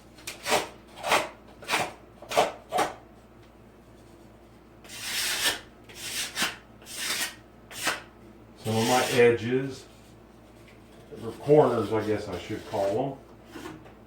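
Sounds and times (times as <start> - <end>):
hand tool scraping a wall: 4.8 - 8.0, 8.6 - 9.3, 10.9 - 13.8.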